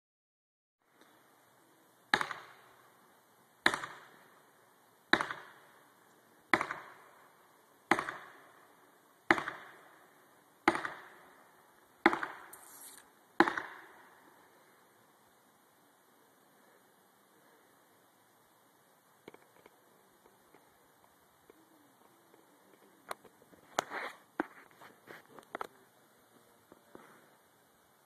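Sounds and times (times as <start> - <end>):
axe chopping tree trunk: 2.1 - 2.5, 3.6 - 4.0, 5.1 - 5.6, 6.5 - 6.9, 7.9 - 8.3, 9.3 - 9.7, 10.6 - 11.1, 12.0 - 12.7, 13.4 - 13.8.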